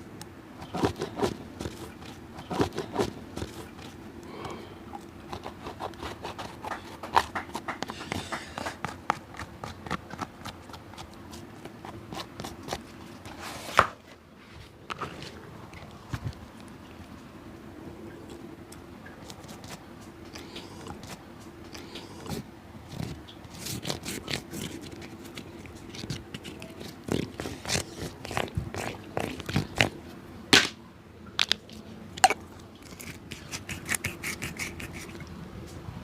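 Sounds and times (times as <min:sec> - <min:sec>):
faint steady hum: 0:00.0 - 0:36.0
tool scraping and clicking on shoe: 0:00.6 - 0:04.0, 0:05.3 - 0:14.0, 0:19.2 - 0:30.0, 0:32.8 - 0:35.2.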